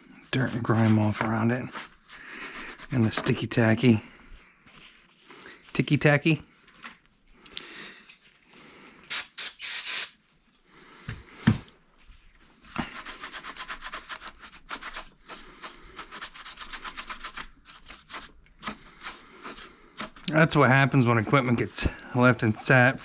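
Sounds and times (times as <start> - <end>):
scrubbing plastic box: 0.4 - 3.6
short hissing bursts: 9.1 - 10.2.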